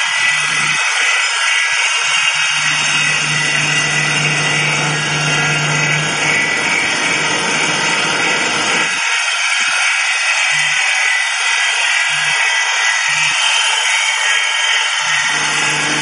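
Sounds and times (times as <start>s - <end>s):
wood being cut by machine: 0.0s - 16.0s
low motor hum: 0.2s - 0.8s, 2.1s - 9.0s, 15.0s - 16.0s.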